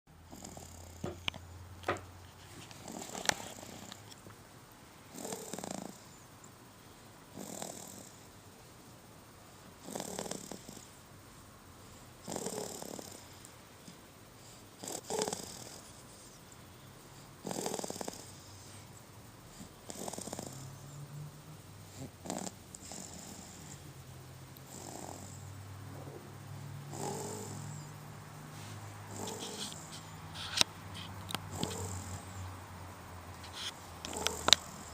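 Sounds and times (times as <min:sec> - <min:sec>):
snoring: 0:00.3 - 0:01.3, 0:02.8 - 0:04.0, 0:05.1 - 0:06.2, 0:07.3 - 0:08.2, 0:09.8 - 0:10.9, 0:12.2 - 0:13.4, 0:14.8 - 0:16.0, 0:17.4 - 0:18.7, 0:19.6 - 0:23.9, 0:24.6 - 0:28.0, 0:29.0 - 0:30.1, 0:31.5 - 0:32.5, 0:33.5 - 0:34.9
person snoring: 0:12.3 - 0:13.2, 0:14.8 - 0:15.8, 0:17.4 - 0:18.3, 0:24.7 - 0:27.9
low steady hum: 0:18.2 - 0:34.9.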